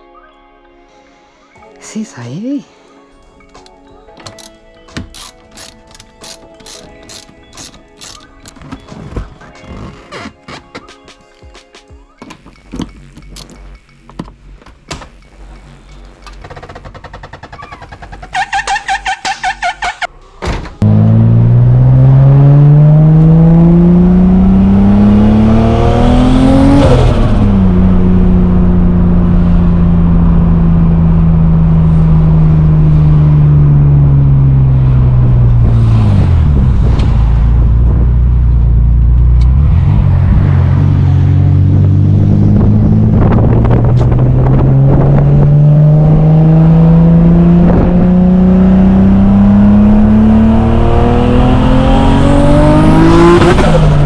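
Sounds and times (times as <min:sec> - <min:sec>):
car engine revving: 0:20.0 - 0:54.0.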